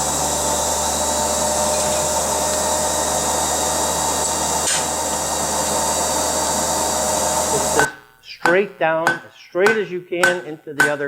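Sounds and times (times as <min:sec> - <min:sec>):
electric blower running: 0:00.0 - 0:08.0.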